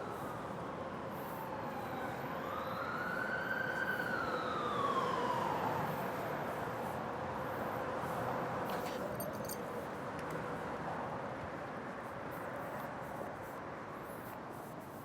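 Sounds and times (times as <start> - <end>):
steady traffic rumble: 0.0 - 14.9
siren wailing: 1.9 - 6.0.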